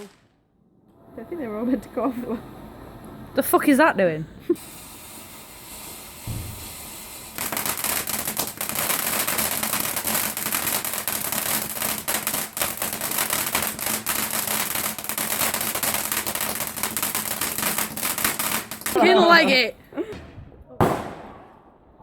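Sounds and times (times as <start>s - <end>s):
firework crackling: 0.0s - 0.4s, 4.5s - 19.8s, 20.8s - 21.8s.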